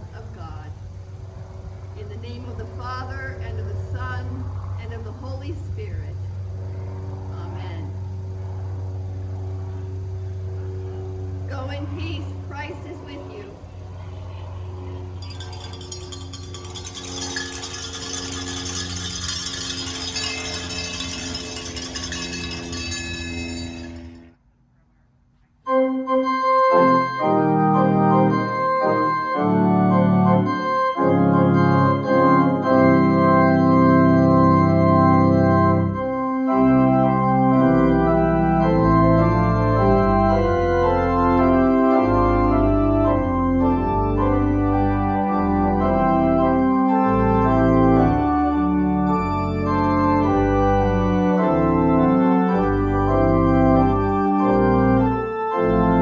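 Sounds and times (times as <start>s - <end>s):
organ playing chords: 25.7s - 56.0s.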